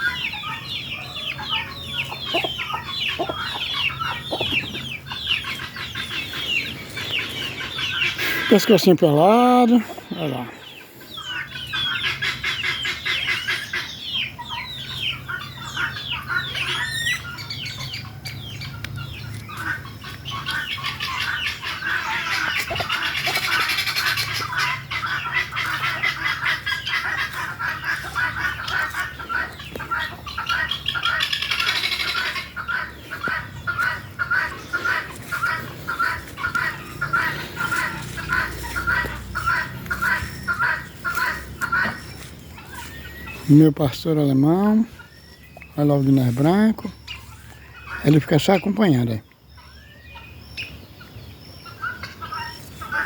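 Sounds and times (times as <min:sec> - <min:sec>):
guinea fowl calling: 0:00.0 - 0:53.0.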